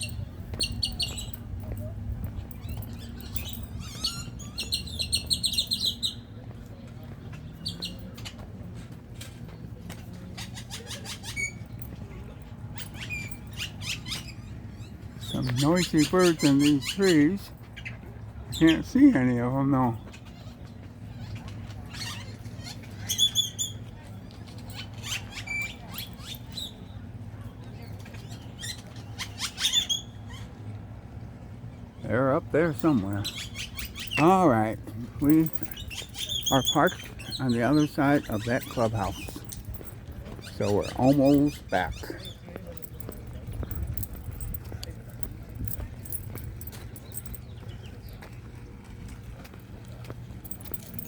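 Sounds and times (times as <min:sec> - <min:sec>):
small birds chirping: 0:00.0 - 0:06.4, 0:32.0 - 0:48.5.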